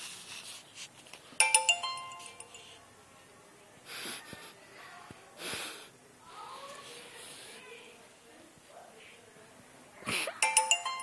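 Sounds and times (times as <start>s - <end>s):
phone message alert chime: 1.4s - 2.8s, 10.4s - 11.0s.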